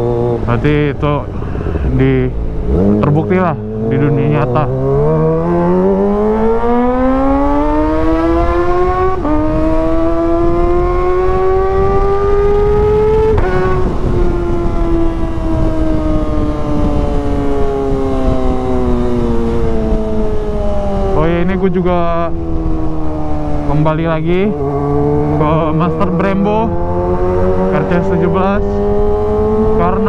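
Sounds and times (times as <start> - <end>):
motorcycle engine at full throttle: 0.0 - 30.0
wind rumble: 0.0 - 30.0.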